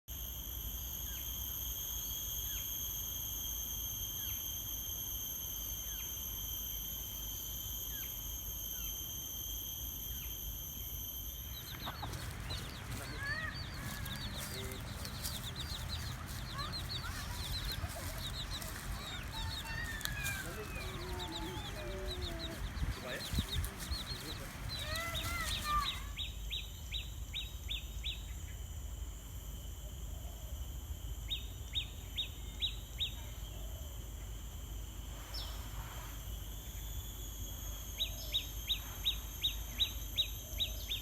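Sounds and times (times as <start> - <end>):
high-pitched insect drone: 0.1 - 41.0
birds chirping rapidly: 11.5 - 26.1
fowl clucking: 11.7 - 13.1.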